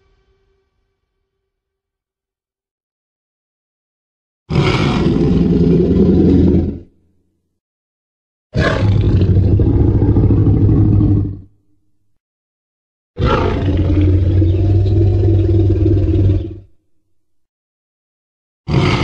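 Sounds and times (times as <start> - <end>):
dinosaur roar: 4.5 - 6.9, 8.6 - 11.6, 13.2 - 16.8, 18.7 - 19.0.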